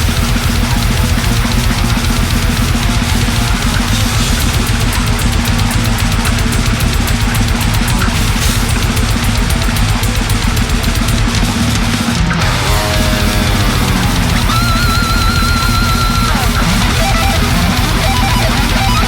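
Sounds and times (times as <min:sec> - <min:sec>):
death metal music: 0:00.0 - 0:19.0.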